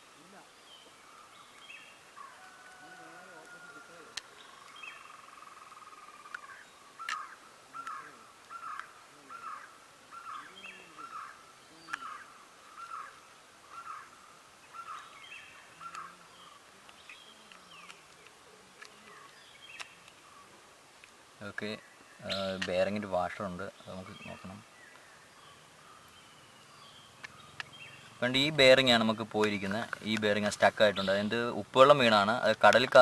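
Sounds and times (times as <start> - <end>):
bird calling: 0.0 - 33.0
faint clicks: 0.8 - 9.0, 11.8 - 13.1, 15.8 - 23.4, 27.1 - 33.0.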